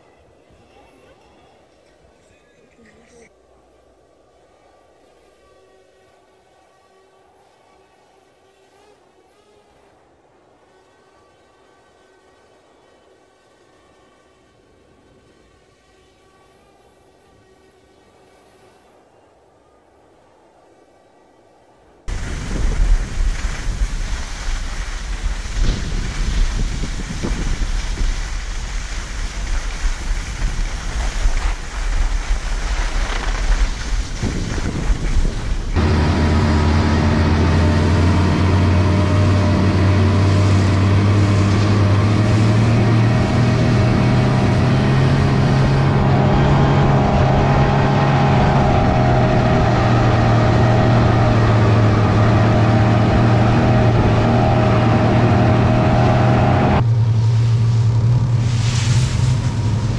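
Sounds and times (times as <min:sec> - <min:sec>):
engine running with low hum: 0:22.1 - 0:59.9
wind buffeting microphone: 0:22.1 - 0:59.9.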